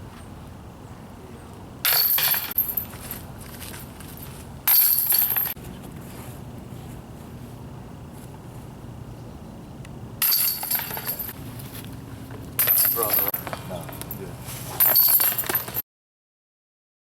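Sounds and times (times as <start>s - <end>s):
metallic jingle of rattling chains: 1.8s - 3.3s, 4.2s - 5.6s, 10.2s - 11.4s, 12.6s - 15.8s.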